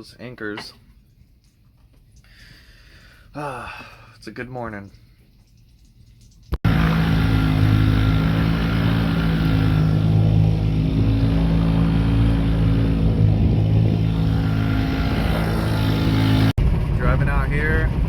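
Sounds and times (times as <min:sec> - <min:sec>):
rushing noise: 0:06.6 - 0:17.0
engine humming steadily: 0:06.6 - 0:18.0.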